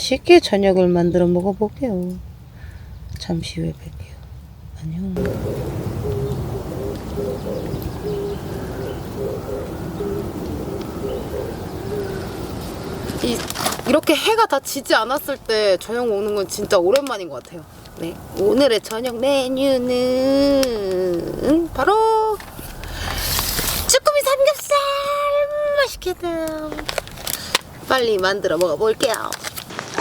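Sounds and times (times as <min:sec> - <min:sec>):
low background noise: 0:00.0 - 0:30.0
dove cooing: 0:05.2 - 0:29.0
woman singing a held syllable: 0:19.6 - 0:22.4.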